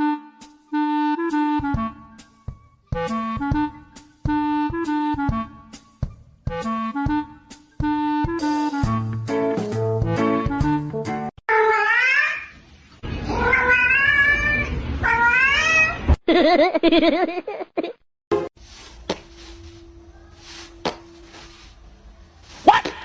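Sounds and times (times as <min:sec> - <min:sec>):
cat meowing: 0:11.5 - 0:12.5, 0:13.3 - 0:16.1.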